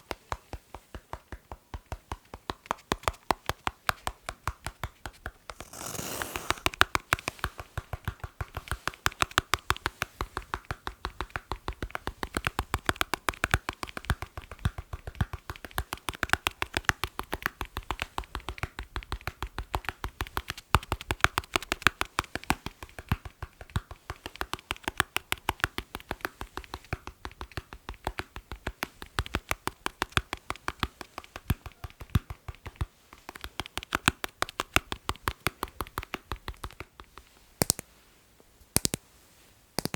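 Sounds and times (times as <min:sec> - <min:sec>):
fingers tapping on hard surface: 0:06.4 - 0:37.8, 0:38.8 - 0:39.0.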